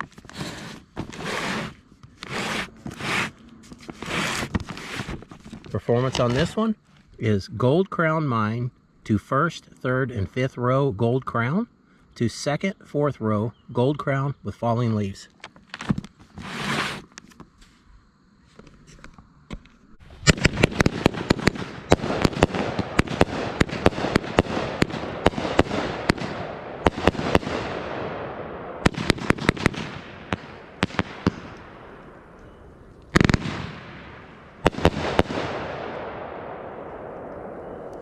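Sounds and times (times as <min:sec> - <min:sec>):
fireworks sharp bangs: 0:00.0 - 0:03.3, 0:20.0 - 0:38.0.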